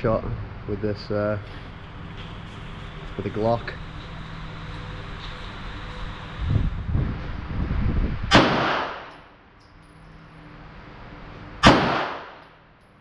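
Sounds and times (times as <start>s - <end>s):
pistol shots: 8.3s - 9.0s, 11.6s - 12.4s.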